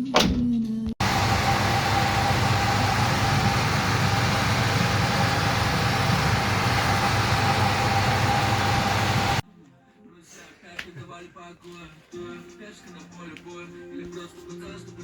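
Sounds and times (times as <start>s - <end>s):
car engine idling: 1.0s - 9.4s.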